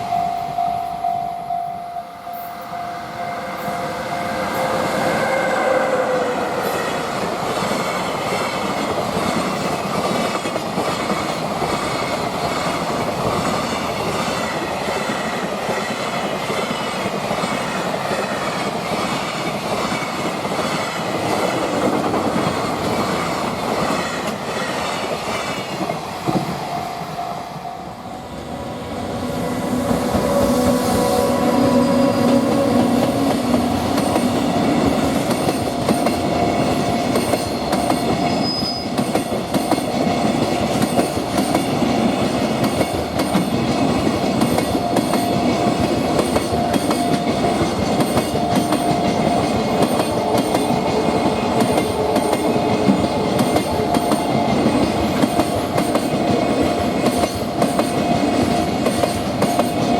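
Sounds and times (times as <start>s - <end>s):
level crossing bell dinging: 0.0s - 4.3s
train wheels clattering: 29.7s - 59.9s.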